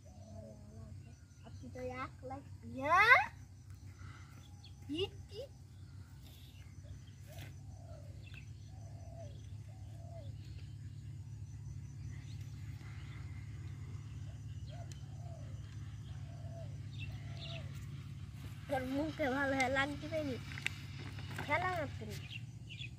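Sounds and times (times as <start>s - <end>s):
bird cooing: 0.0s - 1.1s, 7.0s - 11.2s, 12.1s - 18.2s
steady low rumble: 3.4s - 22.9s.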